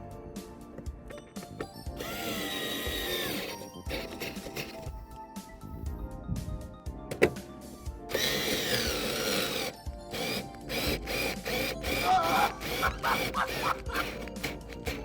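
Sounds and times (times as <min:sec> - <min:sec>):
background music: 0:00.0 - 0:15.0
power drill whining: 0:01.4 - 0:05.1, 0:08.1 - 0:15.0.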